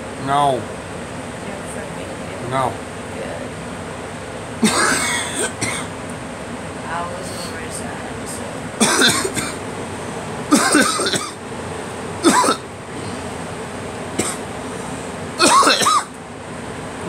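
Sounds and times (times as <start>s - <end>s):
person coughing hard: 4.6s - 5.9s, 8.8s - 9.6s, 10.5s - 11.4s, 12.2s - 13.2s, 14.2s - 14.4s, 15.4s - 16.1s.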